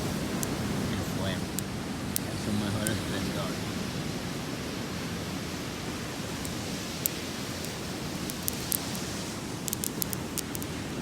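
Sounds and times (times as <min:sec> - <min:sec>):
surf hissing: 0:00.0 - 0:11.0
wind: 0:00.0 - 0:11.0
sharp little crackles: 0:06.4 - 0:10.8.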